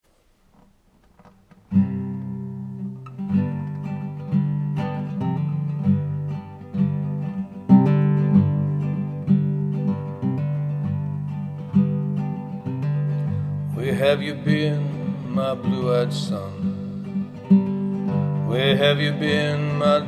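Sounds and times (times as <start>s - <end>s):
acoustic guitar strumming chords: 1.2s - 20.0s.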